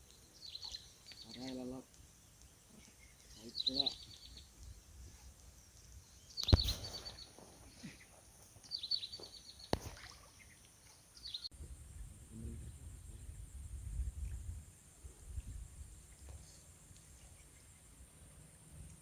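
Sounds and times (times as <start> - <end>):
bird chirping trills: 0.0 - 11.5.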